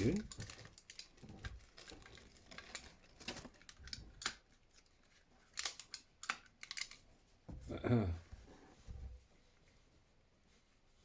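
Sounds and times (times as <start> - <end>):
packaging rustling: 0.0 - 6.0.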